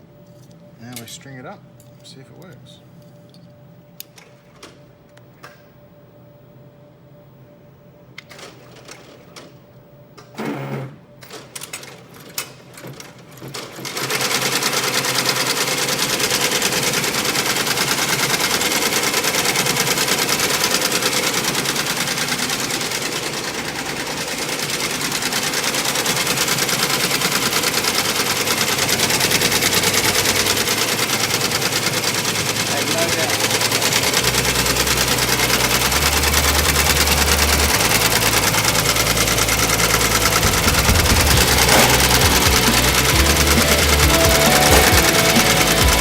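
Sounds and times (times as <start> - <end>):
machine clicks and knocks: 10.2 - 15.1, 16.3 - 46.0
embroidery machine stitching: 10.2 - 46.0.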